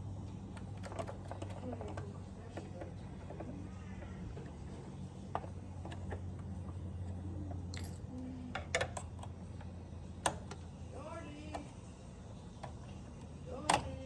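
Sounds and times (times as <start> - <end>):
steady low hum: 0.0 - 14.0
small parts clicking and clinking: 0.6 - 10.6.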